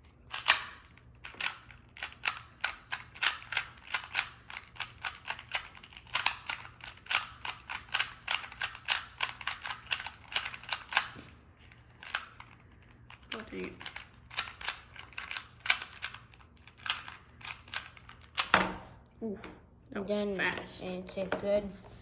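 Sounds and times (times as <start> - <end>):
puzzle cube clacking: 0.3 - 18.8.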